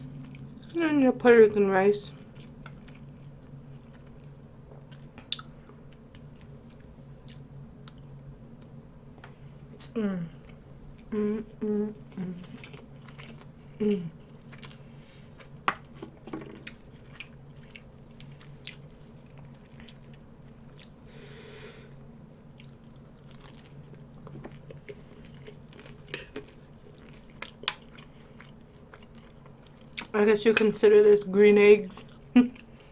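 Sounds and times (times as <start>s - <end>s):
person chewing food: 2.2s - 8.8s, 12.1s - 21.1s, 21.9s - 30.1s.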